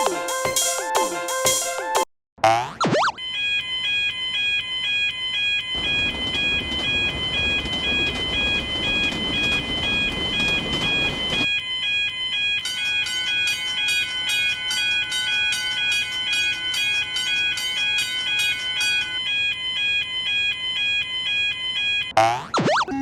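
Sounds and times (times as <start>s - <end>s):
level crossing alarm bell: 3.2s - 22.2s
passing train rumble: 5.7s - 11.5s, 12.6s - 19.2s.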